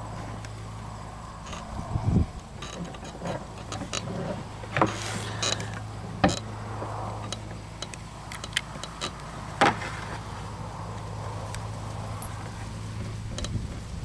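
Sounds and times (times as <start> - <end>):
steady low hum: 0.0 - 14.0
revolver metallic clicks: 7.1 - 9.4.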